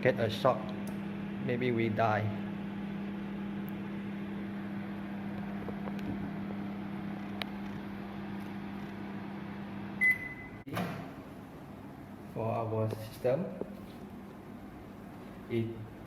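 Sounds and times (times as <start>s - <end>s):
electrical hum: 0.0s - 16.0s
short high beep: 10.0s - 10.6s.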